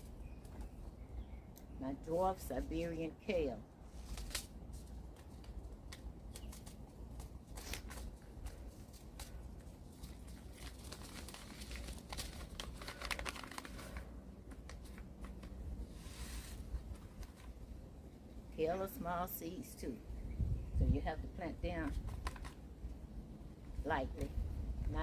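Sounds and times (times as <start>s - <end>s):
low steady rumble: 0.0s - 25.0s
seed packet crinkling: 3.9s - 17.6s.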